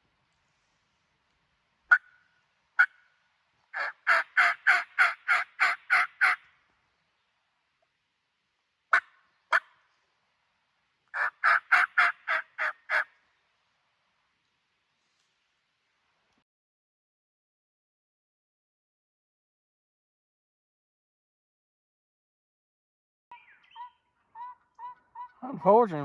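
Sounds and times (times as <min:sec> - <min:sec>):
turkey call yelps: 0:01.9 - 0:02.2, 0:03.7 - 0:06.4, 0:08.9 - 0:09.7, 0:11.1 - 0:13.1, 0:23.3 - 0:25.4.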